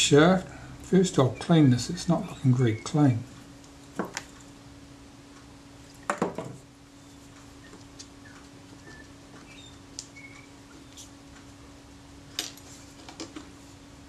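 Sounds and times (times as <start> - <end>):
steady low hum: 0.0 - 14.0
squeaks of rubbing clean: 1.1 - 3.2, 7.0 - 11.1.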